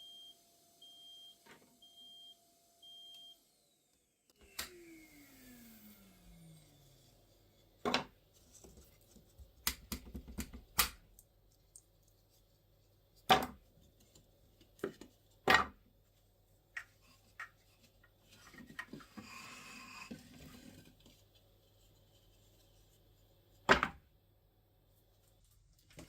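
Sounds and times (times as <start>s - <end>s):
rustling scrape: 17.0s - 23.3s.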